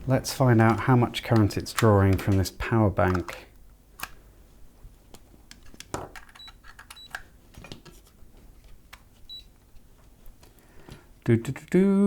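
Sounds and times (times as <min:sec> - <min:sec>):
handling clicks and knocks: 0:00.5 - 0:04.1, 0:05.1 - 0:08.0.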